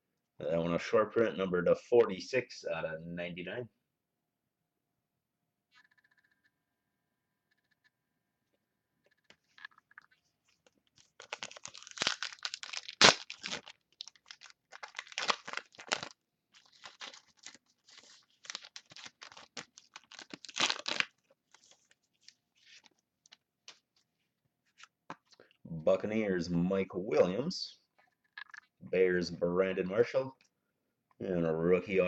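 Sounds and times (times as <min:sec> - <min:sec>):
card pack wrapper tearing and crinkling: 0:09.6 - 0:23.8.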